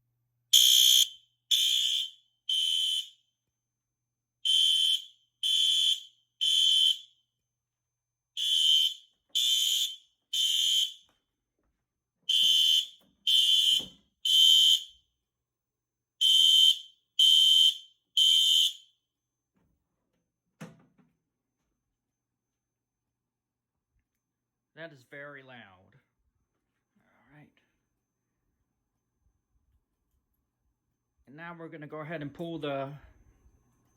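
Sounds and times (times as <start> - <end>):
fire alarm horn beeps: 0.5 - 3.4, 4.4 - 7.4, 8.4 - 11.1, 12.3 - 15.0, 16.2 - 19.0.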